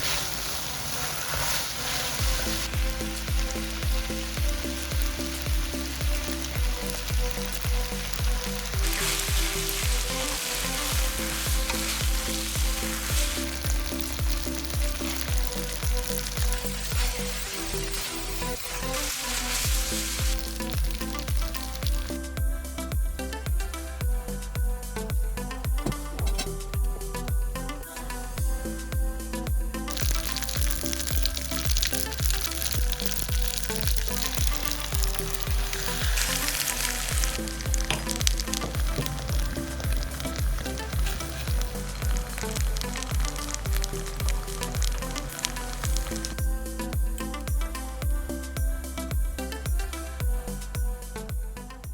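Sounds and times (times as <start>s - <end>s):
food sizzling in a pan: 0.0s - 22.2s, 29.9s - 47.6s
electronic music with kick drum: 2.2s - 51.9s.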